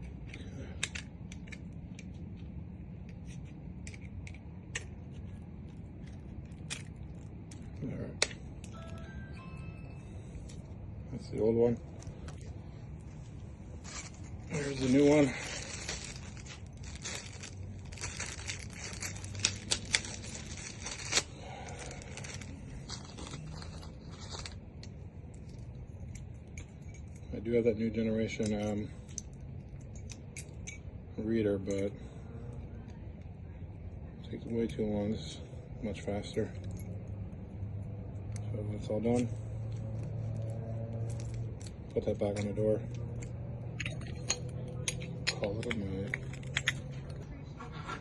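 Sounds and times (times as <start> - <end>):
low steady rumble: 0.0 - 48.0
packaging rustling and crinkling: 11.7 - 25.7.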